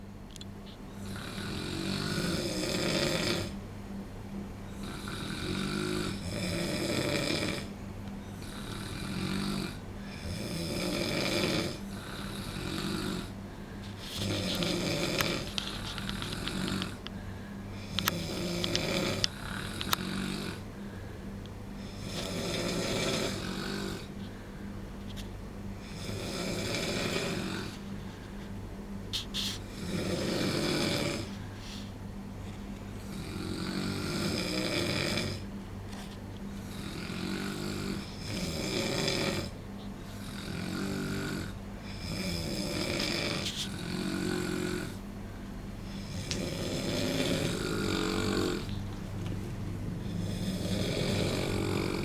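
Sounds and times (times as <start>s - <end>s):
men snoring: 1.0s - 3.6s, 4.7s - 7.7s, 8.3s - 13.4s, 14.1s - 17.1s, 17.8s - 20.7s, 21.8s - 24.2s, 25.8s - 27.8s, 29.6s - 31.3s, 33.0s - 35.4s, 36.6s - 45.0s, 45.9s - 48.8s, 50.0s - 52.0s.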